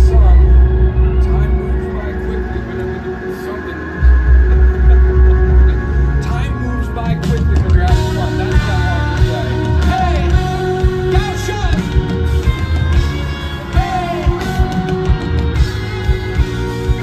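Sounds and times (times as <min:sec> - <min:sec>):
live pop band with pounding bass: 0:00.0 - 0:17.0
person singing or calling out: 0:13.3 - 0:15.4.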